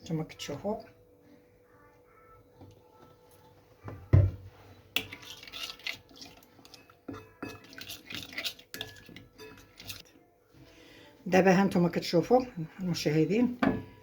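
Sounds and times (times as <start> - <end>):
spoon scraping a bowl: 4.7 - 10.1.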